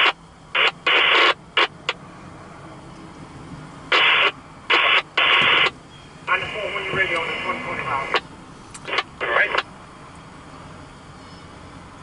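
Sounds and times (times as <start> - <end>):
radio static bursts: 0.0 - 2.0, 3.9 - 9.7.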